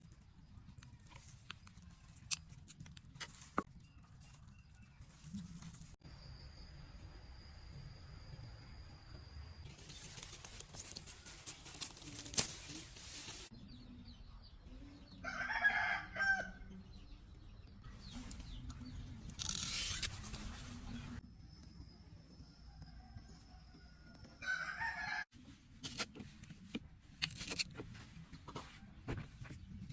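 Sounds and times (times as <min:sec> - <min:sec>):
rooster crowing: 0:15.2 - 0:16.6, 0:22.9 - 0:25.3.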